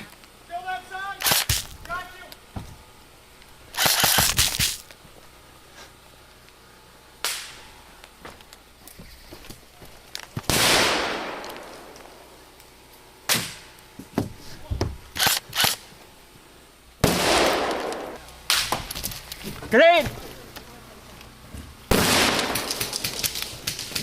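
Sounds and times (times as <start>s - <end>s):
airsoft gunshots: 1.2s - 1.8s, 3.8s - 4.8s, 10.5s - 11.6s, 17.0s - 18.7s, 21.9s - 24.0s.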